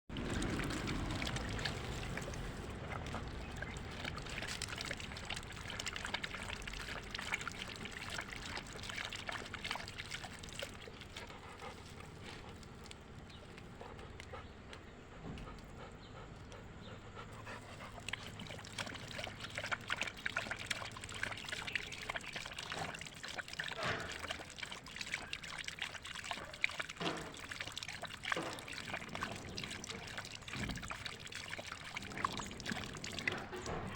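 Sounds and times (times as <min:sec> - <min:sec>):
dog lapping water: 0:00.1 - 0:33.9.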